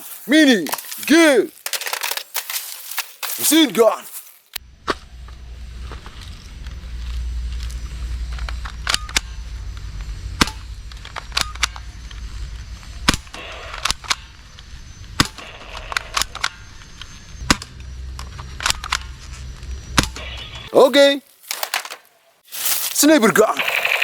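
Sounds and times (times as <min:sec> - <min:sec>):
low rumble: 0:04.6 - 0:20.7
toy blasters clicking: 0:23.6 - 0:24.0.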